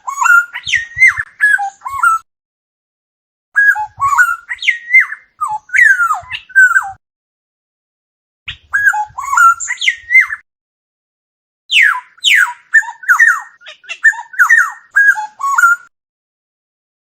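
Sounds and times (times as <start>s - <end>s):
oriole whistling: 0.1s - 2.2s, 3.6s - 7.0s, 8.5s - 10.4s, 11.7s - 15.9s.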